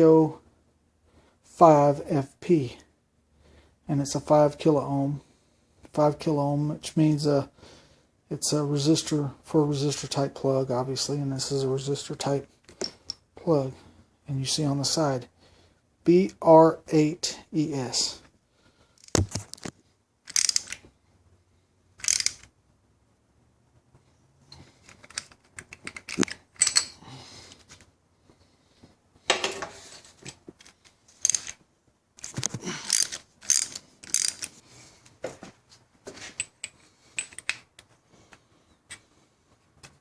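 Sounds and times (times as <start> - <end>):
hand tools clicking and clinking: 20.3 - 20.8, 22.0 - 22.5, 24.8 - 27.6, 30.3 - 31.6, 32.2 - 34.6, 36.4 - 37.9.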